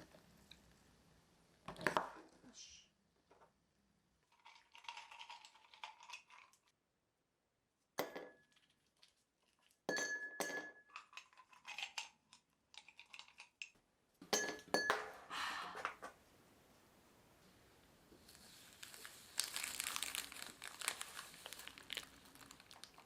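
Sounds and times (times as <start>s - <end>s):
dishes and utensils clinking: 9.9s - 11.2s, 14.2s - 15.8s.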